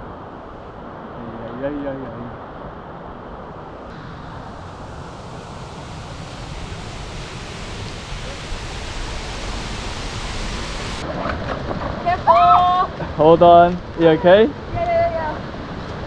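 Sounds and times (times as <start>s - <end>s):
waterfall rushing water: 3.9s - 11.0s.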